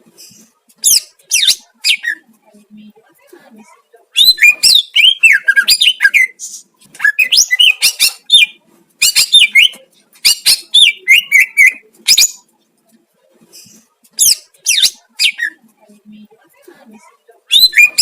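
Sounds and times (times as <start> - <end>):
bird singing whistled phrases: 17.5 - 18.0.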